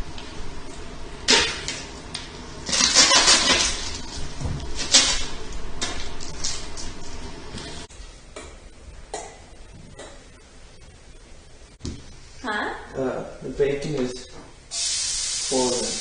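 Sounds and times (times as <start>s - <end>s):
dishes and pans clattering: 2.7s - 3.9s.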